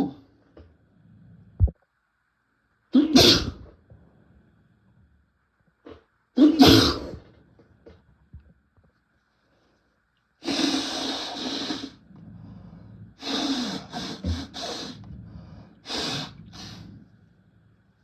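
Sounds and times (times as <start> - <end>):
person breathing hard: 10.4 - 17.8.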